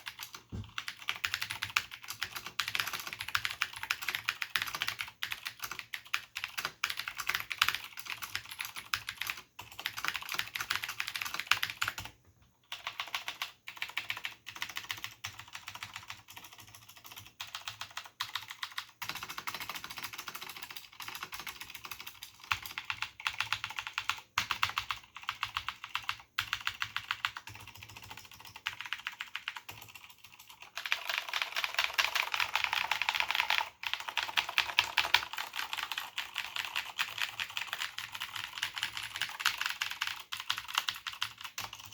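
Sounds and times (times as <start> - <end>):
clicky keyboard typing: 0.0 - 41.9.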